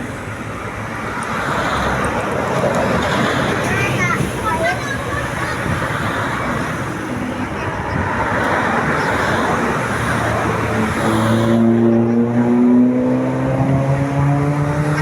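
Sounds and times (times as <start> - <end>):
vehicle road noise: 0.0 - 15.0
vehicle engine accelerating: 5.9 - 15.0.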